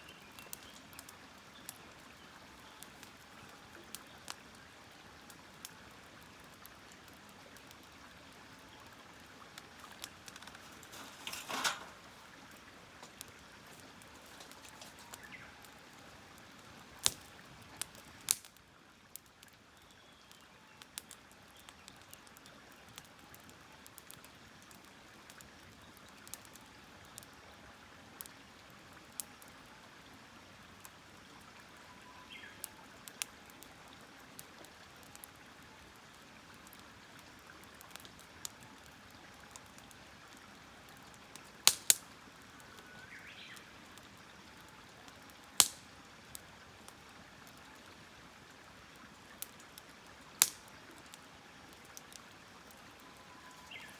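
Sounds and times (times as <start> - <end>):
wood fire crackling and popping: 0.1 - 19.5, 34.4 - 47.9, 48.9 - 53.9.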